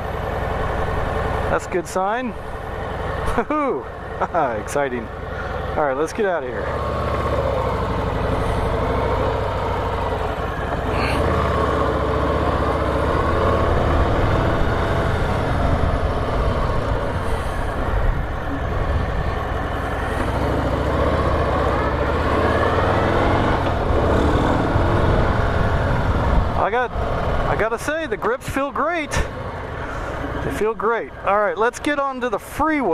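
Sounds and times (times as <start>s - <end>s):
motorcycle engine revving: 0.0s - 32.9s.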